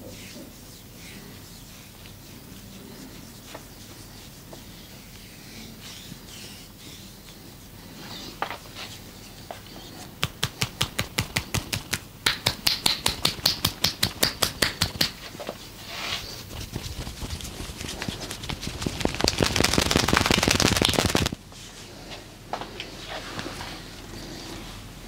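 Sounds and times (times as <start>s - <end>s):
hands slapping on a body: 10.2s - 15.3s, 16.6s - 21.4s.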